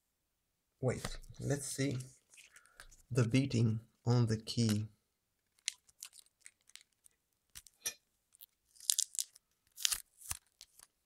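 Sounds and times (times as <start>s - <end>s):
wrapping crackling and tearing: 5.4s - 11.0s.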